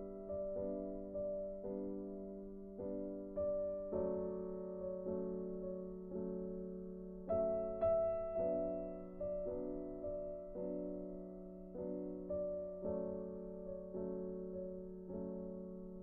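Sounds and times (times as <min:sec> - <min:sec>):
soft piano chords: 0:00.0 - 0:16.0.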